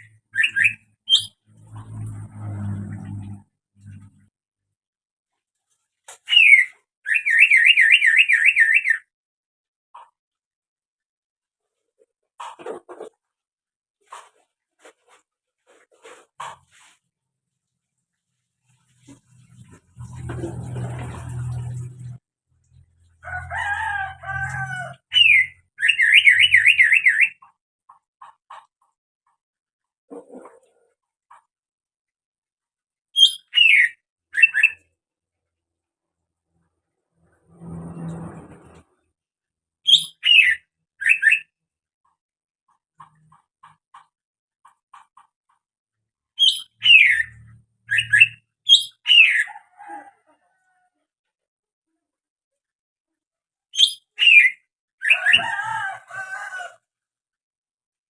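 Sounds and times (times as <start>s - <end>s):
bird calling and trilling: 0.0s - 1.4s, 6.3s - 9.1s, 25.0s - 27.5s, 33.2s - 34.9s, 39.8s - 41.5s, 46.4s - 49.5s, 53.7s - 55.4s.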